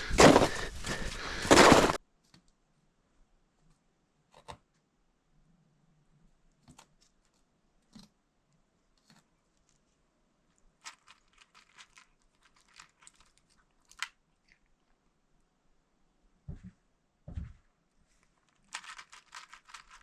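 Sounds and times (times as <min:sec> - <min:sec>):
cat crunching dry kibble: 0:00.0 - 0:02.0, 0:09.0 - 0:15.0, 0:18.1 - 0:20.0.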